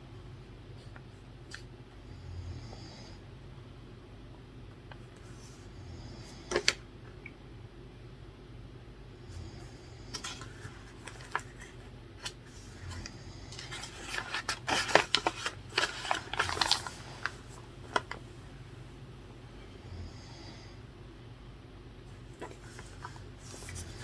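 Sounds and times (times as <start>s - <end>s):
faint low snoring: 2.1s - 3.2s, 19.8s - 20.8s.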